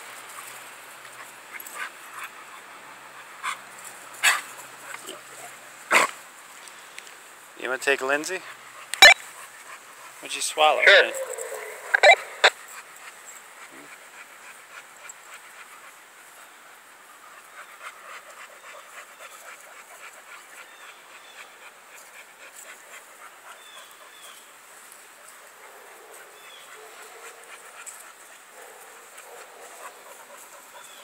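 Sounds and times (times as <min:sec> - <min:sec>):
dog panting: 0:00.3 - 0:06.1, 0:07.6 - 0:31.0
faint high chirps: 0:09.0 - 0:09.2, 0:10.8 - 0:12.5.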